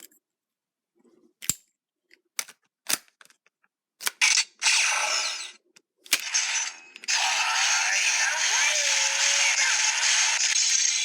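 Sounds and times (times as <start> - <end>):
electronic toy sound effect: 4.2 - 5.6, 6.2 - 11.0.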